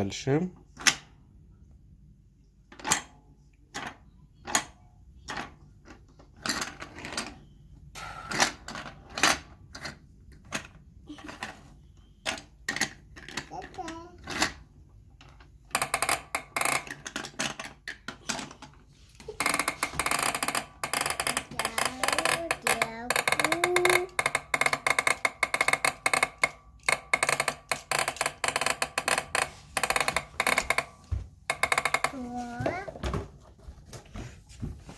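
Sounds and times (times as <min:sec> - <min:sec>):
toy track crank rattling clicks: 0:15.7 - 0:18.6, 0:19.3 - 0:30.9, 0:31.5 - 0:32.2
child vocalising: 0:21.5 - 0:24.2.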